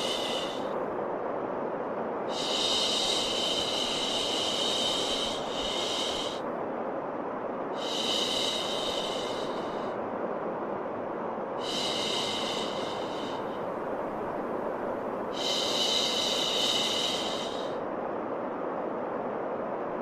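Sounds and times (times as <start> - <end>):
low rushing white noise: 0.0 - 20.0.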